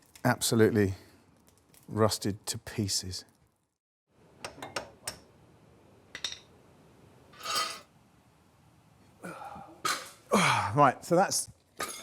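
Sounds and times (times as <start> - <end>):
metal tools clinking: 7.4 - 7.8
rasping metal scrape: 7.4 - 7.9.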